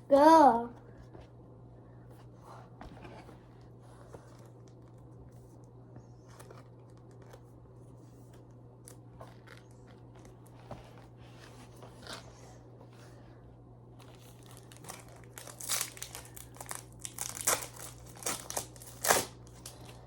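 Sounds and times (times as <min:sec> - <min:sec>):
steady low hum: 0:00.0 - 0:20.0
foil packs and cards crinkling: 0:14.0 - 0:20.0.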